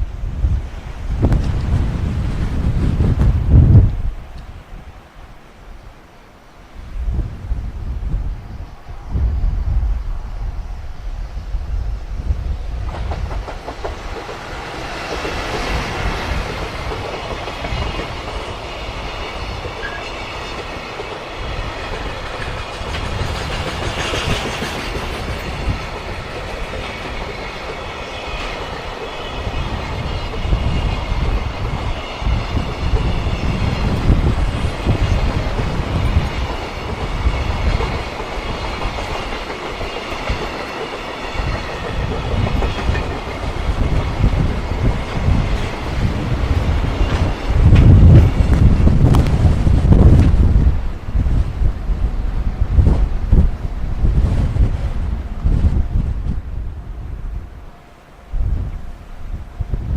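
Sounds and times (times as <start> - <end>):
wind buffeting microphone: 0.0 - 6.0, 6.6 - 59.9
train wheels clattering over joints: 12.8 - 50.4.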